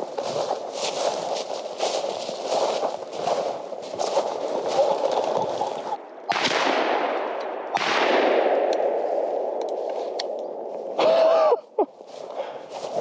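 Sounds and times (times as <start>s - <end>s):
footsteps crunching in snow: 0.0s - 6.0s, 8.8s - 13.0s
shotgun shots with echo: 6.3s - 9.5s.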